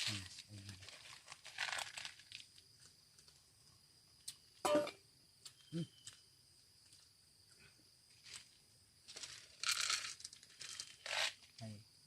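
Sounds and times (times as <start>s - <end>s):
rustling and crinkling: 0.0s - 3.5s, 8.1s - 11.6s
insects droning: 0.0s - 12.0s.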